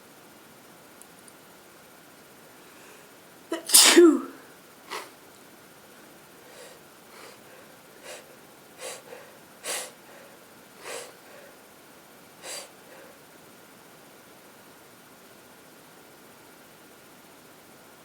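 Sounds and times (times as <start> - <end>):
woman sniffing through stuffy nose: 3.5 - 5.1, 6.5 - 10.2, 10.8 - 11.5, 12.4 - 13.2.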